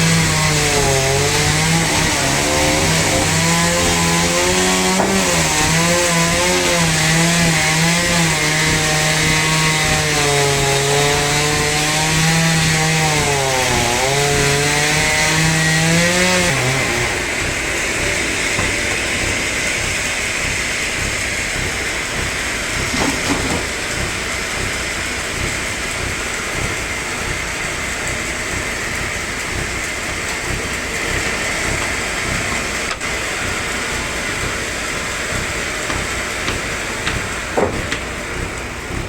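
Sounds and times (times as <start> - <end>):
power saw cutting log: 0.0 - 39.0
knock: 22.9 - 23.7, 35.9 - 38.1.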